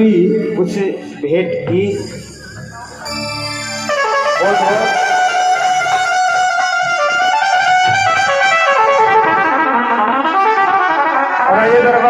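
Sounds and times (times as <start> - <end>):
electronic keyboard slow melody: 0.0 - 10.8.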